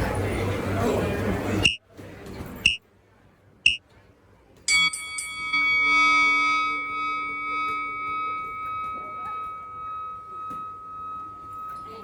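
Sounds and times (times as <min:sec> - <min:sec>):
struck bell-like tone: 0:04.7 - 0:12.0.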